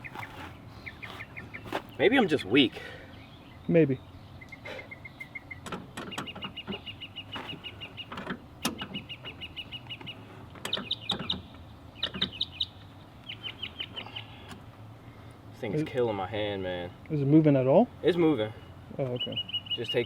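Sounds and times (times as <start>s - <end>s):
songbird trilling: 0.0s - 14.5s, 18.0s - 20.0s
sharp metallic clicks and knocks: 5.6s - 6.8s, 8.1s - 9.0s.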